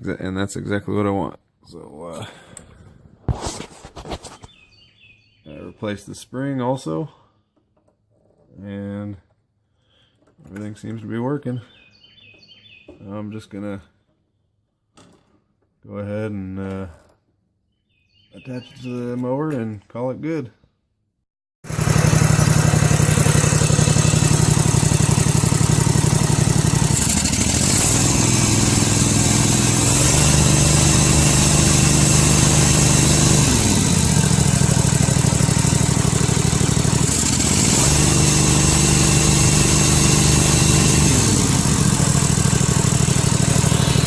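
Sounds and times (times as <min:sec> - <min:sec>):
mower engine revving: 0:21.6 - 0:44.0.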